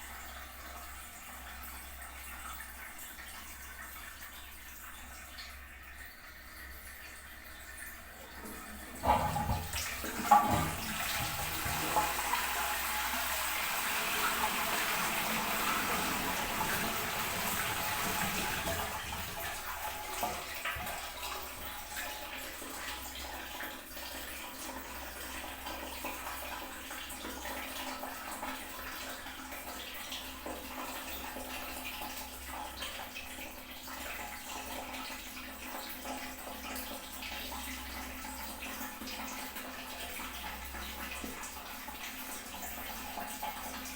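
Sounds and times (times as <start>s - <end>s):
rush of flushing water: 0.0s - 43.9s
toilet flush clunk: 7.8s - 23.8s.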